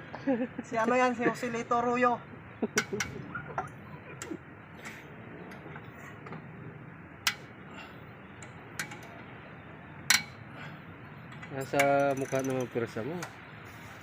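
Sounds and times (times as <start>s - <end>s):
metallic clicks of hand tools: 10.1s - 10.4s, 11.3s - 13.4s.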